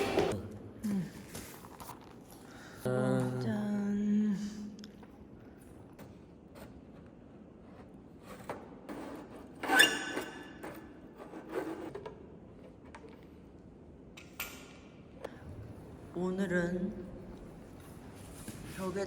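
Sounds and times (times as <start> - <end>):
squealing scrape: 9.6 - 10.9.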